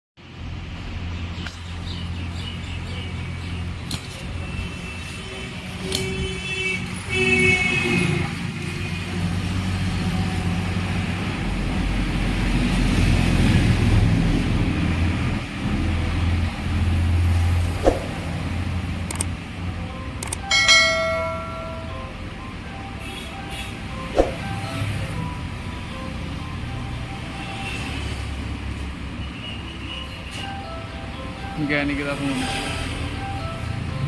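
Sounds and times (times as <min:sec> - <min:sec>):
traffic engines running: 0:00.2 - 0:34.0
car horns tooting: 0:04.4 - 0:09.0.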